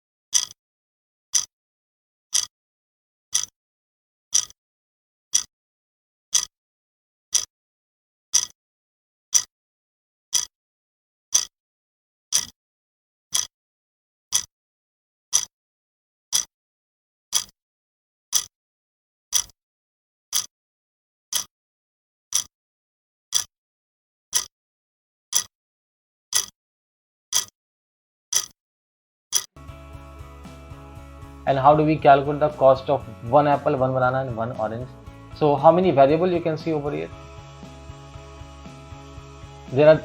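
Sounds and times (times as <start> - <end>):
clock ticking: 0.4 - 0.6, 2.3 - 2.5, 3.3 - 3.5, 4.3 - 4.6, 5.3 - 5.5, 6.3 - 6.5, 7.3 - 7.5, 10.3 - 10.5, 12.3 - 12.5, 13.3 - 13.5, 14.3 - 14.5, 15.3 - 15.5, 16.3 - 16.5, 17.3 - 17.5, 18.3 - 18.5, 19.3 - 19.5, 20.3 - 20.5, 21.3 - 21.5, 22.3 - 22.5, 23.3 - 23.5, 24.3 - 24.5, 25.3 - 25.5, 26.3 - 26.5, 27.3 - 27.5, 28.3 - 28.6, 29.3 - 29.6.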